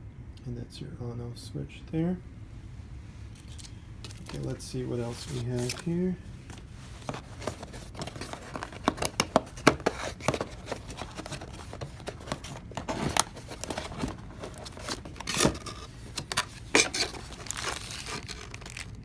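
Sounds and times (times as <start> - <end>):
plastic wrapping rustling: 3.3 - 19.0
cardboard box clicks and scrapes: 5.0 - 18.9.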